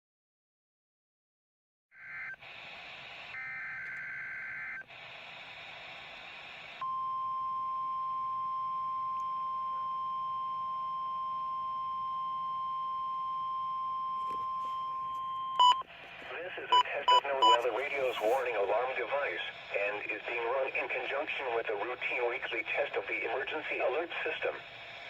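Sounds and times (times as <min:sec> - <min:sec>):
radio static hiss: 0:02.0 - 0:06.8, 0:15.6 - 0:25.0
steady warning alarm tone: 0:08.6 - 0:15.9, 0:16.7 - 0:18.4.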